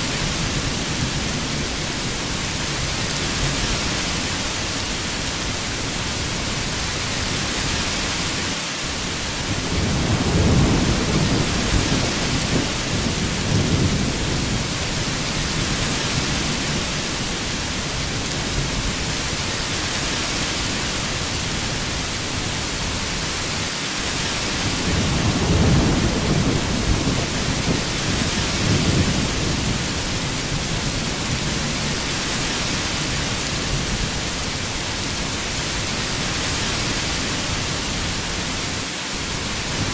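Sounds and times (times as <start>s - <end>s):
heavy rain falling: 0.0s - 39.9s
thunder rumbling: 9.4s - 19.2s, 24.6s - 35.9s.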